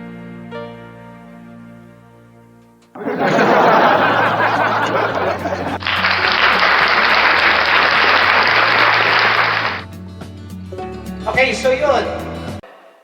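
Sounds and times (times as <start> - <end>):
canned applause: 3.0 - 9.8.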